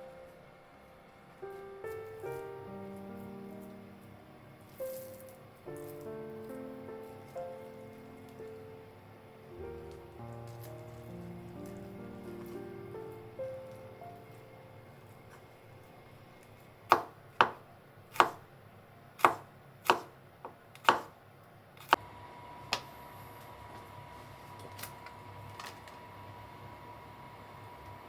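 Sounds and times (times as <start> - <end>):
knife chopping on cutting board: 16.9 - 18.5, 19.2 - 21.2.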